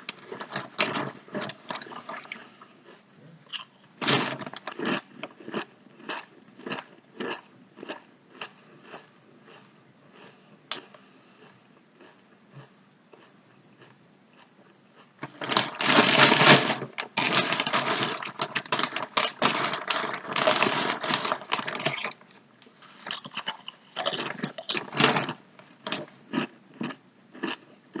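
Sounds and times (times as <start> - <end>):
chip bag crinkling: 0.0 - 5.6, 15.2 - 26.5.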